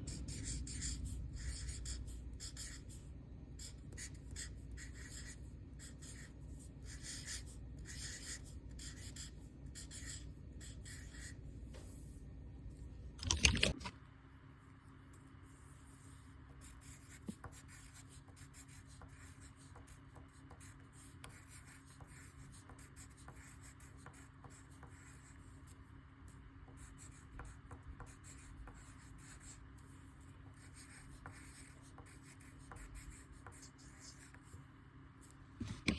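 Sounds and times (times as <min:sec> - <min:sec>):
low room hum: 0:00.0 - 0:35.9
pen scratching on paper: 0:00.1 - 0:03.0, 0:03.6 - 0:11.4, 0:15.9 - 0:25.5, 0:26.7 - 0:29.9, 0:30.5 - 0:34.5.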